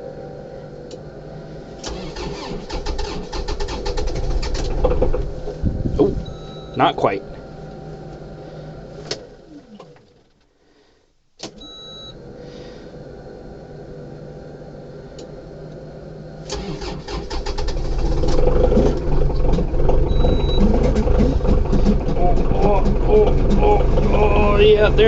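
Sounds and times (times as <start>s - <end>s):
steady low hum: 0.0s - 11.3s, 11.9s - 25.0s
diesel engine cranking and starting: 1.5s - 10.4s, 16.4s - 25.0s
short beep: 6.2s - 6.9s, 11.6s - 12.2s, 20.1s - 20.9s.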